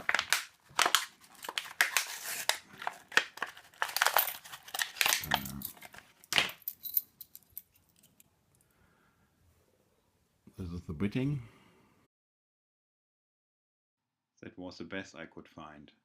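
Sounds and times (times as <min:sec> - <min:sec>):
padlock and key rattling: 0:03.6 - 0:08.3.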